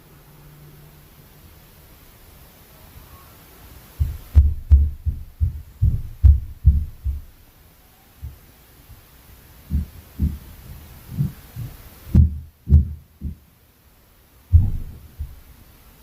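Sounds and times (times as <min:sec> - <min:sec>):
heavy footsteps through ceiling: 0:04.0 - 0:07.4, 0:09.6 - 0:13.5, 0:14.5 - 0:15.5.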